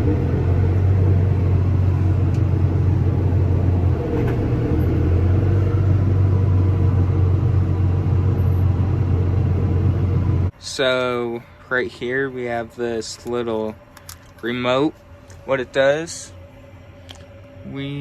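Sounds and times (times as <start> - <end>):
tractor engine running: 0.0 - 10.5.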